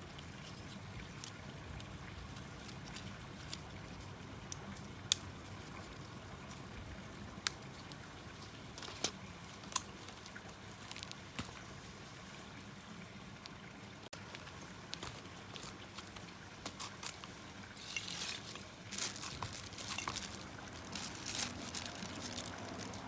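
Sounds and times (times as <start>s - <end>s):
wood fire crackling: 14.0s - 23.0s
burning wood popping: 14.1s - 23.0s.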